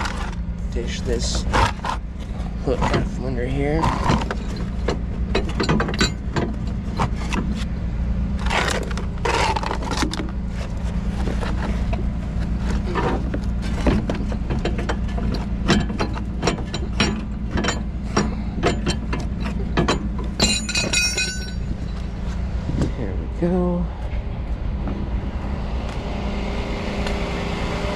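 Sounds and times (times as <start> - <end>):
truck engine humming: 0.0 - 27.9
metal chain scraping and clinking: 18.8 - 22.7
ringing metal clang: 19.8 - 22.1.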